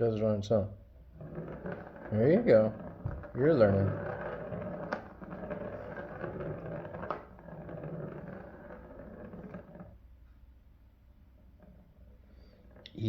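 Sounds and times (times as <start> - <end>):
spinning toy whirring: 1.0 - 10.1.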